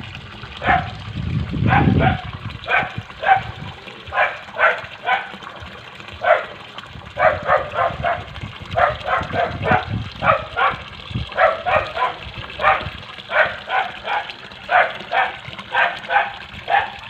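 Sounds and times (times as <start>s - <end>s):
dog barking: 0.6s - 1.0s, 1.7s - 5.4s, 6.2s - 6.6s, 7.2s - 10.8s, 11.4s - 17.0s.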